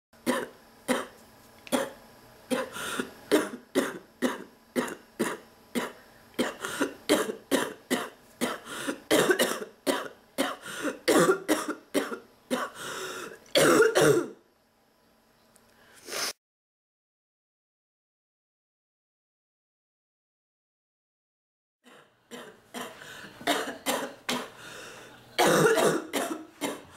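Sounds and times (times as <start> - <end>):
harsh barking cough: 0.3 - 1.1, 1.7 - 2.7, 3.3 - 12.8, 13.6 - 14.4, 21.9 - 24.6, 25.4 - 26.9.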